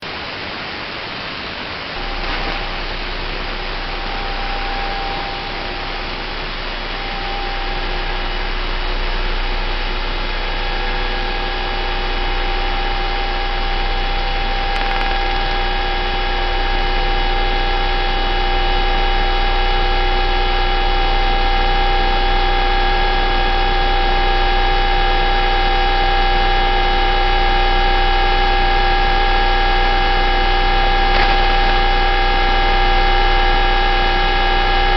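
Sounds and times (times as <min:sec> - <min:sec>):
low steady radio drone: 0:00.0 - 0:34.9
radio static hiss: 0:01.4 - 0:16.3, 0:30.8 - 0:33.4
steady higher tones: 0:02.0 - 0:25.9.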